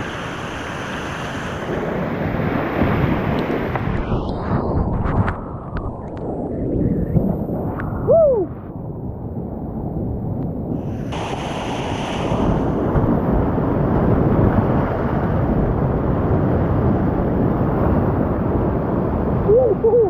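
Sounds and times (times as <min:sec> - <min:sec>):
rushing whitewater: 0:00.0 - 0:03.9.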